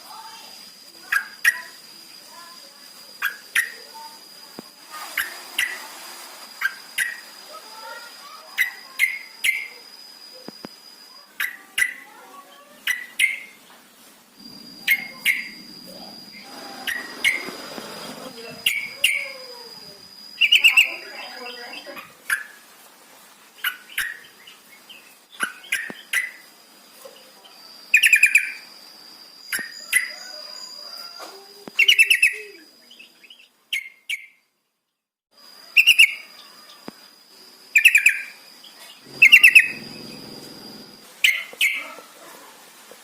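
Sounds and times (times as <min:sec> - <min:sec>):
thin high whine: 0:14.4 - 0:20.4, 0:39.0 - 0:41.2.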